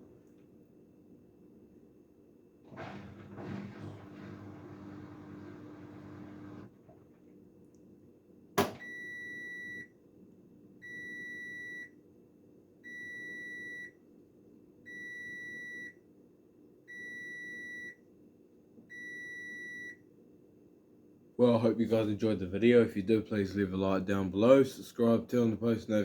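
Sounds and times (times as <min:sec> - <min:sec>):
washing machine click: 0:08.6 - 0:08.9.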